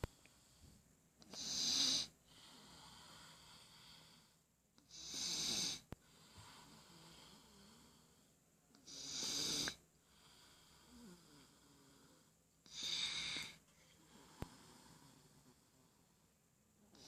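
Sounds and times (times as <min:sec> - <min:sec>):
soft breathing: 0:00.0 - 0:17.0
person snoring: 0:01.3 - 0:04.3, 0:04.9 - 0:08.2, 0:08.8 - 0:16.0.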